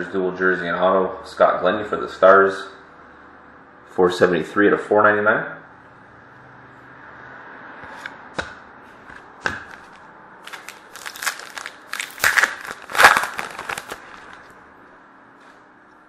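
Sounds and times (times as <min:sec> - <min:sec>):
trading cards snapping and rustling: 0:09.1 - 0:14.5.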